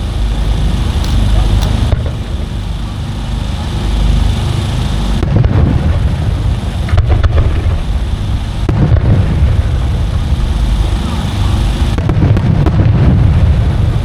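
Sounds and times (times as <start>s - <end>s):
firework shells bursting: 0.2s - 3.6s.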